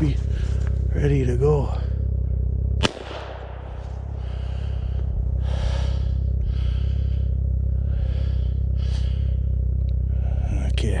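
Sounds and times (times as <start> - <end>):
heavy gasping breaths: 0.0 - 0.9, 3.7 - 10.6
low hum: 0.0 - 11.0.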